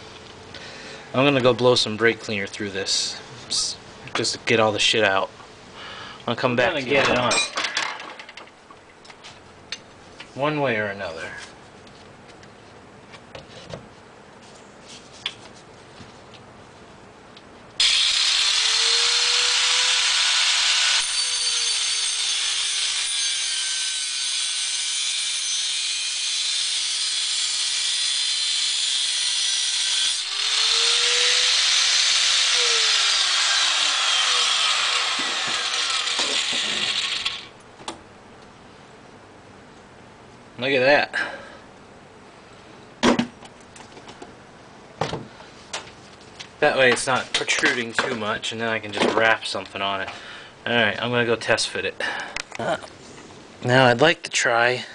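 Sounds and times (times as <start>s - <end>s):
angle grinder whining and grinding: 17.8s - 37.6s.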